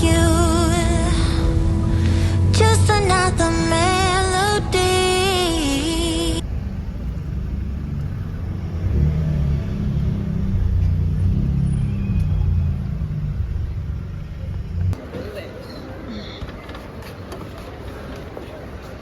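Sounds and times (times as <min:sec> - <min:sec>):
background song: 0:00.0 - 0:06.4
low vehicle rumble: 0:00.0 - 0:15.0.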